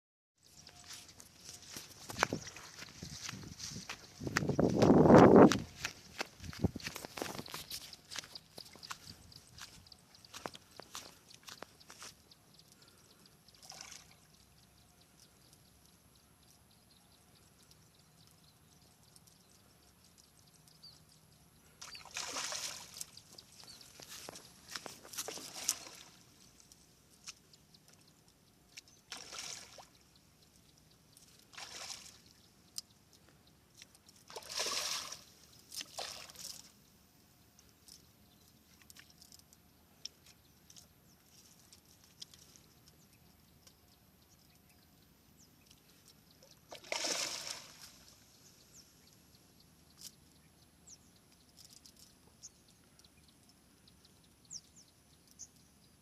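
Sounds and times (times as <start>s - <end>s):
water sloshing and splashing: 21.8s - 26.7s, 28.7s - 30.1s, 31.2s - 32.4s, 33.8s - 36.7s, 46.1s - 48.2s.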